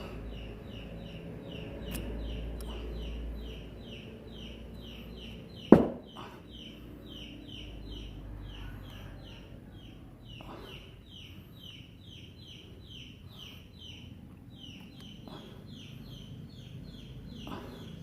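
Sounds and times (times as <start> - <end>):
sharp ringing knock: 5.7 - 6.1.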